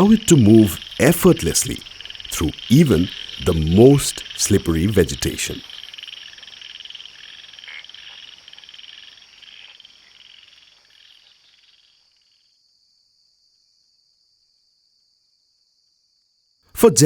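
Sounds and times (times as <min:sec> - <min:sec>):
high-pitched insect drone: 0:00.0 - 0:12.8
frogs trilling: 0:00.0 - 0:13.8.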